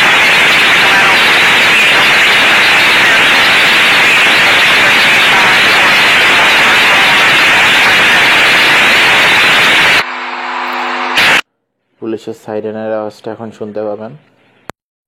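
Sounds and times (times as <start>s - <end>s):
walkie-talkie radio static hiss: 0.0s - 10.1s, 10.7s - 11.4s.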